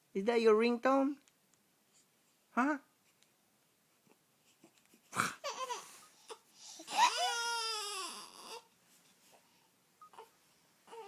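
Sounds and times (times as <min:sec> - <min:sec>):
young child wailing: 0:06.9 - 0:08.6.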